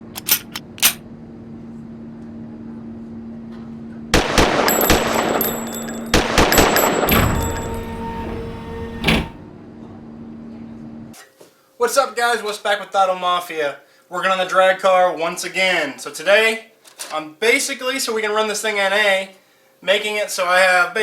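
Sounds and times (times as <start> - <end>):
rapid machine-gun fire: 4.2 - 7.1
single gunshot bangs: 4.2 - 7.6.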